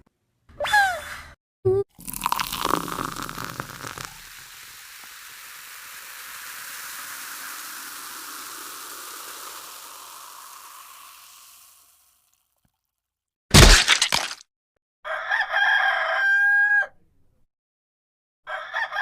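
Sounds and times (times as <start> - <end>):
steady hiss: 3.1 - 12.0.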